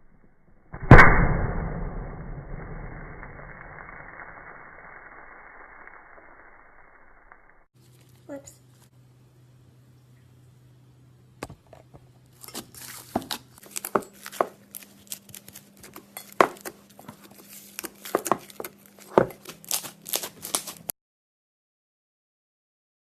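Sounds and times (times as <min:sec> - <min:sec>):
faint steady hum: 0:07.1 - 0:16.0
slime crackles and pops: 0:17.6 - 0:20.9.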